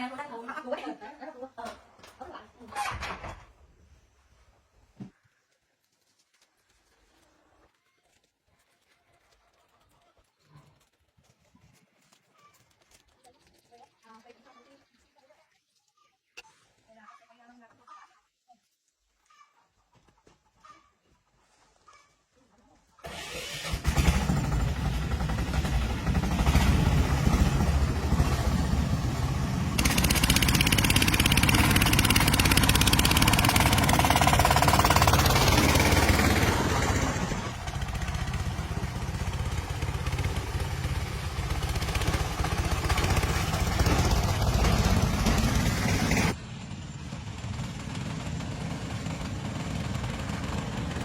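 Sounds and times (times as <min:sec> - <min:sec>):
vehicle engine running: 0:23.9 - 0:51.0.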